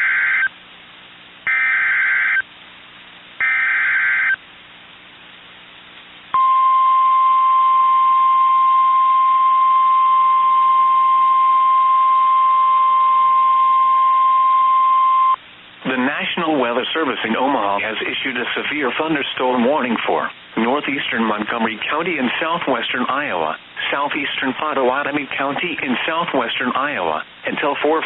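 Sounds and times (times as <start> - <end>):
steady warning alarm tone: 1.5 - 2.4, 3.4 - 4.4.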